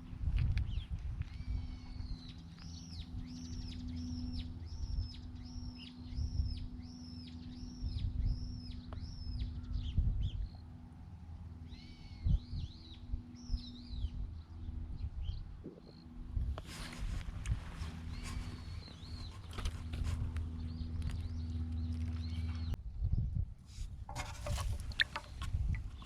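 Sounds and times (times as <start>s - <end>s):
small bird singing: 0.4s - 10.8s, 11.6s - 23.3s
low rumble: 7.4s - 24.2s.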